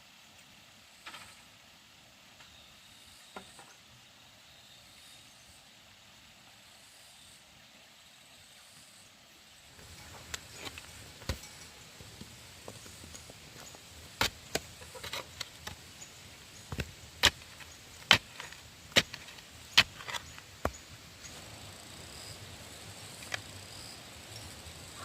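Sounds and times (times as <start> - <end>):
hand tool striking wood: 9.8 - 15.9, 16.6 - 20.9.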